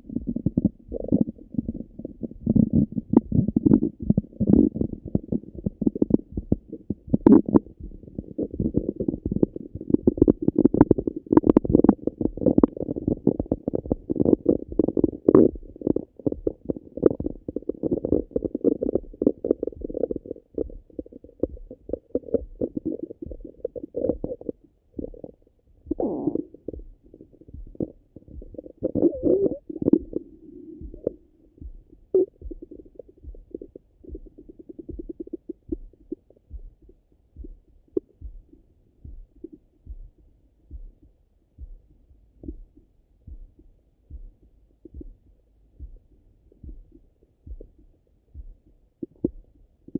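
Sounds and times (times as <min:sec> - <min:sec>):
stomach gurgling through stethoscope: 0:00.0 - 0:36.5.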